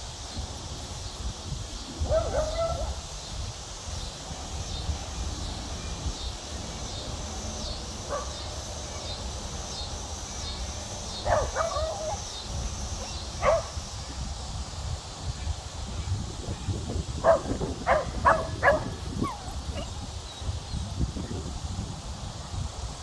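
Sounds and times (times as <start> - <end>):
low wind rumble: 0.0 - 23.0
dog whining and yipping: 17.9 - 19.9.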